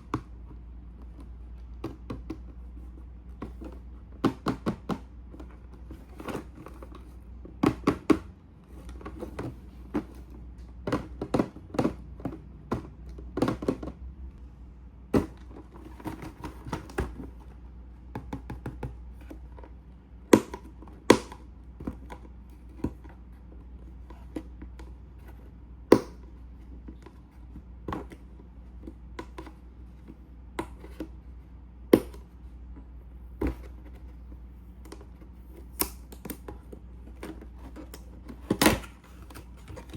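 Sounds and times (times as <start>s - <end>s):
plastic parts clicking and tapping: 0.0s - 14.1s.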